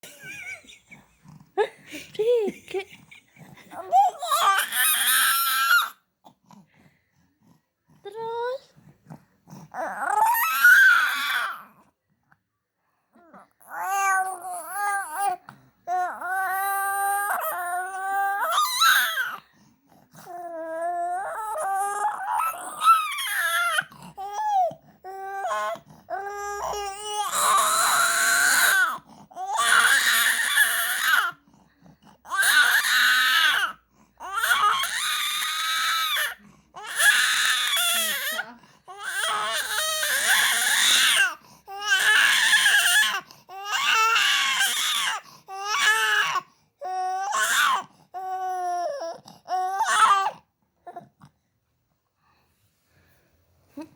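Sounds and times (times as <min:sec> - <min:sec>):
small child crying: 0:03.8 - 0:05.9, 0:09.8 - 0:11.6, 0:20.4 - 0:31.4, 0:32.3 - 0:33.7, 0:34.3 - 0:50.4.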